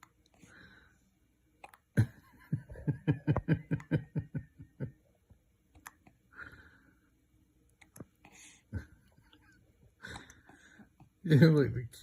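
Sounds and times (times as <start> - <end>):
adult chuckling softly: 1.9 - 5.2, 8.4 - 10.5.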